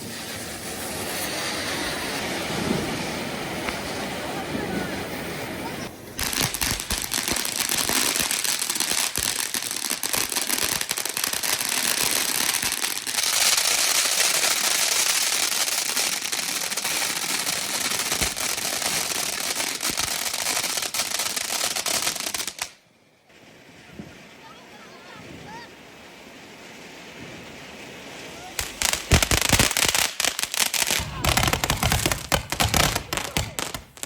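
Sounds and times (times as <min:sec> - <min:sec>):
firecrackers crackling: 0:00.0 - 0:22.8, 0:28.5 - 0:34.0.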